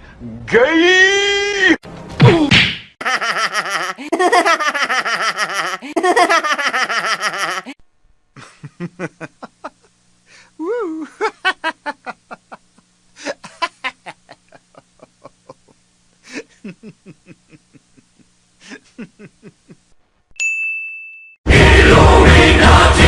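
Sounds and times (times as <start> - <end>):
loud music: 21.5 - 23.0.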